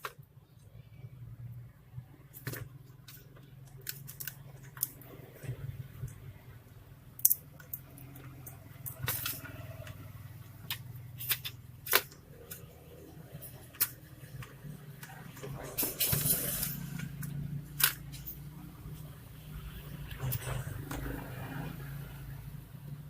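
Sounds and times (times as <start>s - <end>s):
low steady hum: 0.0s - 23.0s
laptop parts clicking and tapping: 2.3s - 6.2s, 7.2s - 12.7s.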